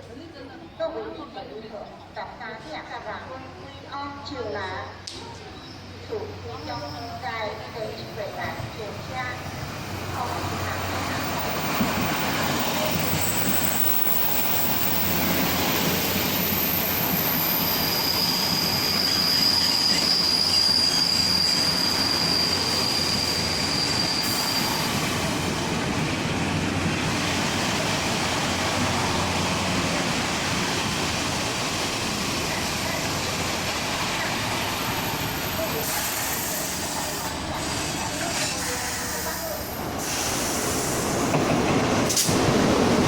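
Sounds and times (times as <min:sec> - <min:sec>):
train wheels rumbling on rail: 0:05.0 - 0:43.0
high wheel squeal: 0:09.2 - 0:25.4, 0:32.2 - 0:41.2.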